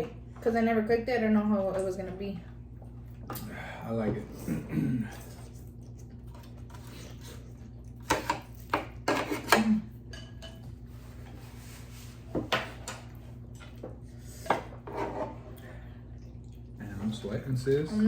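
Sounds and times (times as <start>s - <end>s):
steady low hum: 0.0s - 18.0s
utensils clinking against a bowl: 8.0s - 10.8s.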